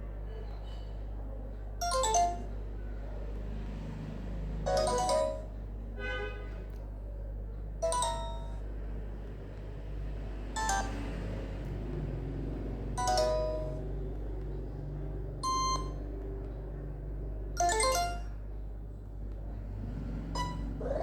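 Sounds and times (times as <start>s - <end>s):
electronic ringtone melody: 1.8s - 2.6s, 4.7s - 5.6s, 7.8s - 8.6s, 10.6s - 11.2s, 13.0s - 13.9s, 15.4s - 16.0s, 17.6s - 18.3s, 20.4s - 20.8s.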